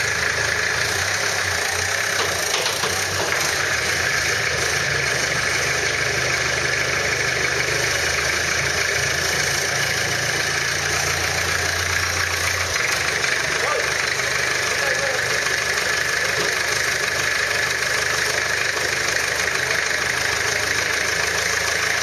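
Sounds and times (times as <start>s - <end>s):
vehicle engine drone: 0.0s - 22.0s
faint clicks from vehicle: 2.2s - 3.4s.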